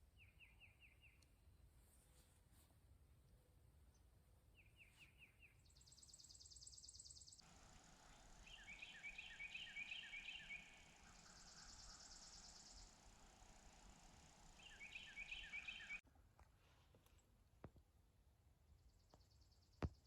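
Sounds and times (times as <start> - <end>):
songbirds chirping and trilling: 3.2 - 16.0.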